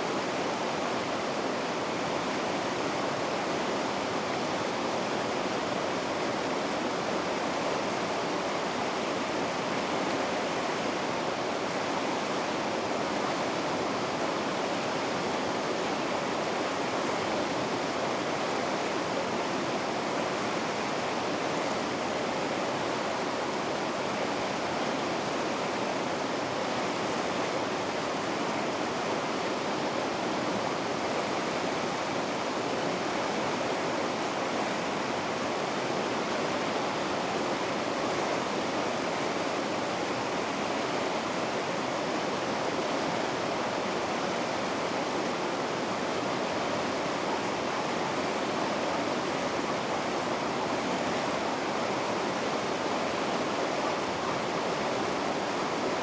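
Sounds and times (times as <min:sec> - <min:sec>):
river rapids rushing: 0:00.0 - 0:56.0.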